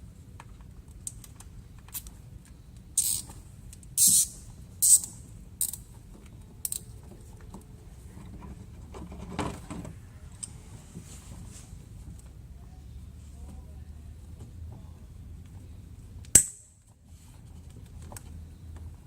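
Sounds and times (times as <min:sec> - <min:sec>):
zip tie ratcheting: 0:03.0 - 0:03.3, 0:04.0 - 0:05.8.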